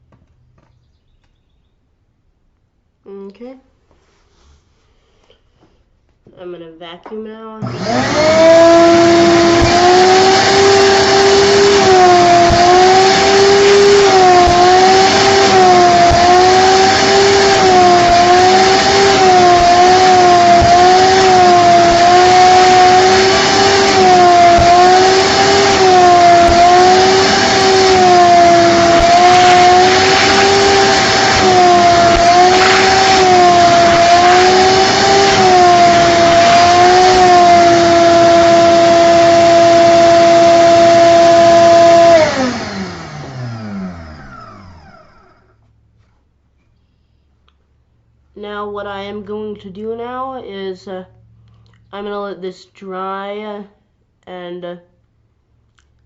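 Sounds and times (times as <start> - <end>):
vacuum cleaner motor whine: 7.6 - 45.7.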